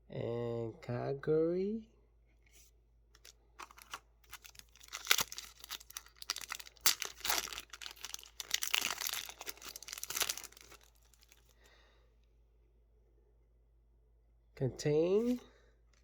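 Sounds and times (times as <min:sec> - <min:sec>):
foil wrapper crinkling: 0:03.2 - 0:11.6.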